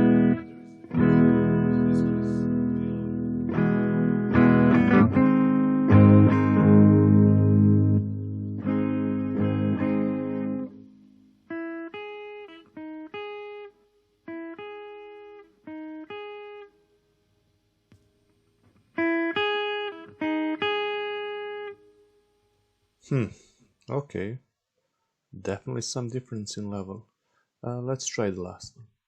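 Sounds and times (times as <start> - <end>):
electric guitar through amplifier: 0.0 - 16.8.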